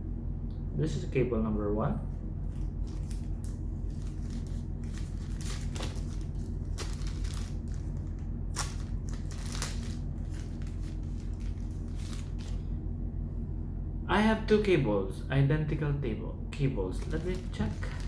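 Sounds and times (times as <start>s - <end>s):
steady low hum: 0.0s - 18.0s
plastic wrapping crinkling: 2.5s - 12.6s, 17.0s - 18.0s.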